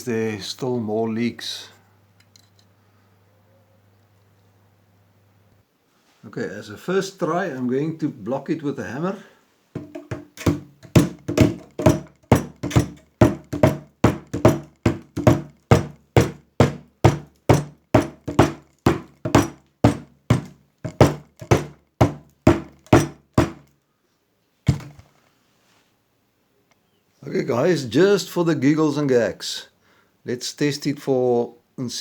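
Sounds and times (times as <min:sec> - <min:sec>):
hammer blows on metal: 0:09.8 - 0:23.6.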